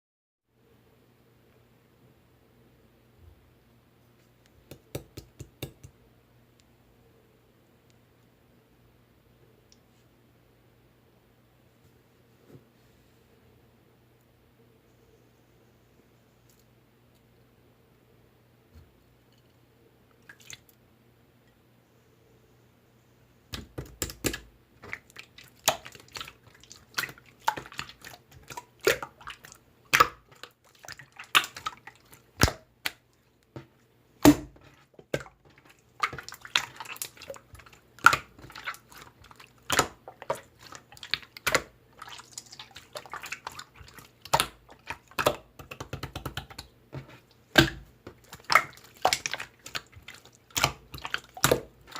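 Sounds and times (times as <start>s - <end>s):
slime squishing with wet pops: 23.5s - 51.9s.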